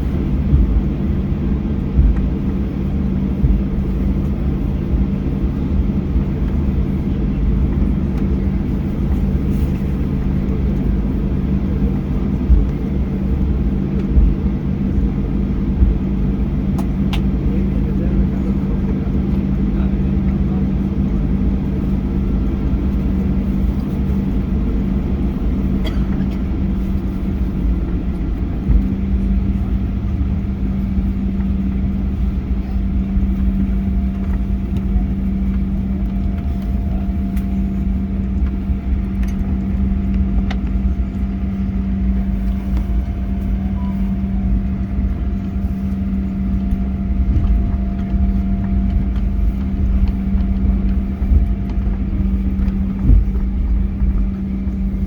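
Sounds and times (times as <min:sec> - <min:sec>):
air conditioning hum: 0:00.0 - 0:55.0
jet engines idling: 0:00.0 - 0:55.0.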